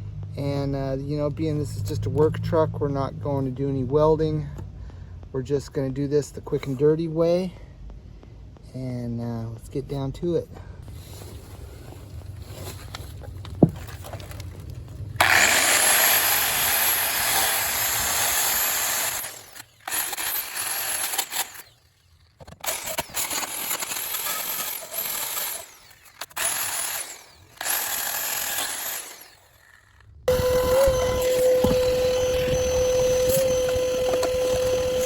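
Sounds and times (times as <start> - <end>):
power tool grinding metal: 15.2 - 35.0.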